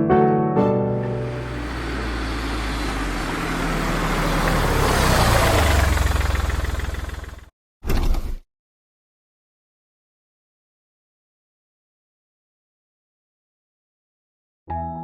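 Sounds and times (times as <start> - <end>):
bus engine hum with hiss: 1.0 - 7.3.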